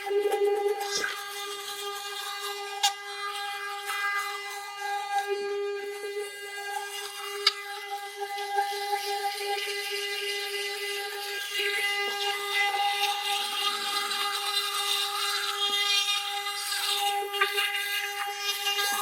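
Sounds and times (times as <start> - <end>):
electric toothbrush humming: 0.0 - 19.0
toothbrush scrubbing: 0.8 - 1.4.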